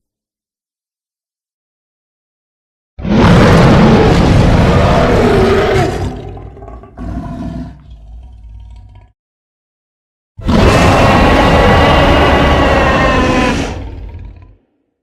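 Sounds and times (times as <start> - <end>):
monster roar: 3.0 - 9.1, 10.4 - 14.8.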